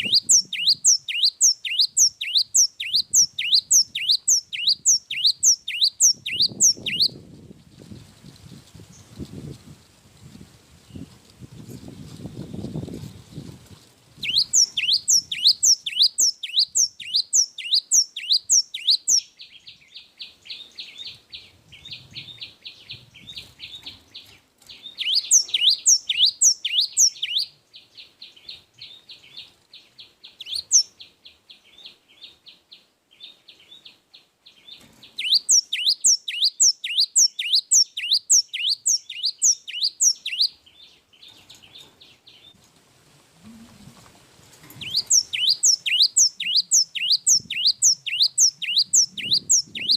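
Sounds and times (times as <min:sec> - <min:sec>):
bird chattering trill: 0:00.0 - 0:07.2, 0:14.2 - 0:19.3, 0:25.0 - 0:27.5, 0:35.2 - 0:40.5, 0:44.8 - 0:49.9
bird singing down-sweeping notes: 0:24.8 - 0:29.4, 0:44.8 - 0:49.9.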